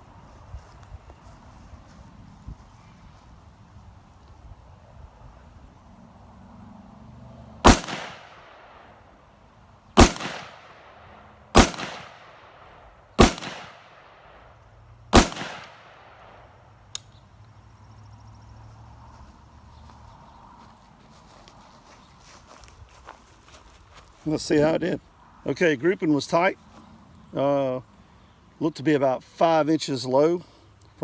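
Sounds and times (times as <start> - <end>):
rifle shots with echo: 7.6 - 9.0, 10.0 - 14.5, 15.1 - 16.4.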